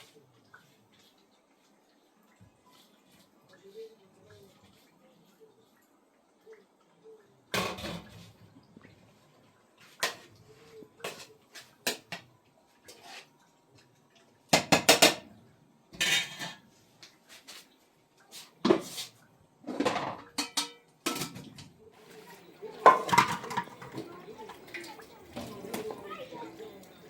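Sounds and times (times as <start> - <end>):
dishes and utensils clattering: 7.5 - 8.4, 9.8 - 12.3, 14.5 - 15.3, 15.9 - 16.8, 18.6 - 27.0.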